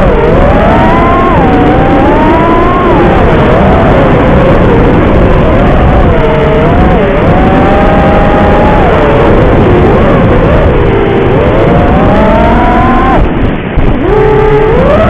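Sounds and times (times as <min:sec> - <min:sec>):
quadcopter motors whining: 0:00.0 - 0:15.0
steady rushing noise: 0:00.0 - 0:15.0.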